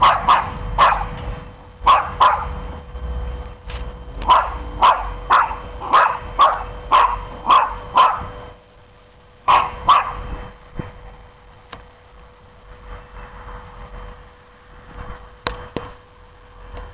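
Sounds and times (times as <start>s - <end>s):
dog barking: 0.0s - 1.1s, 1.8s - 2.6s, 4.2s - 8.4s, 9.5s - 10.2s.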